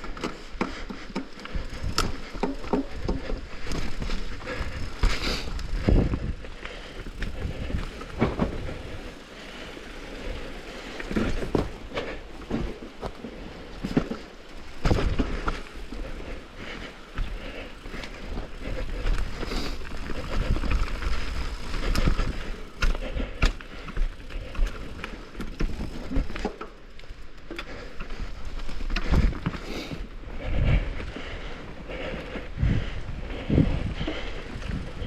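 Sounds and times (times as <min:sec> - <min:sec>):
bike knocks and rattles: 0:00.0 - 0:09.2, 0:10.0 - 0:29.6
bike tyres on dirt trail: 0:00.0 - 0:35.0.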